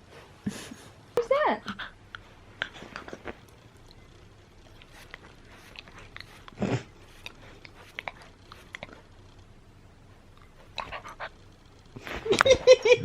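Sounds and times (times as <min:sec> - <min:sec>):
puppy chewing mouth clicks: 0:01.6 - 0:09.1, 0:10.3 - 0:11.4.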